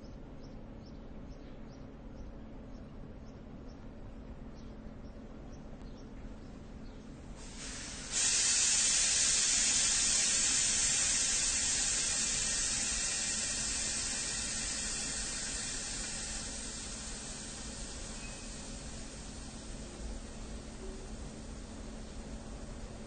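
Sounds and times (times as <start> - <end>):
train venting pressure hiss: 7.2 - 23.0.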